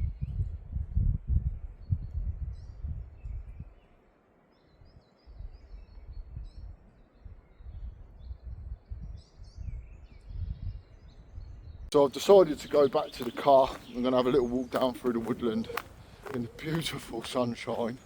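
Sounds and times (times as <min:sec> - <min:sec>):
wind buffeting microphone: 0:00.0 - 0:03.8, 0:04.7 - 0:18.0
birds chirping and singing: 0:04.5 - 0:18.0.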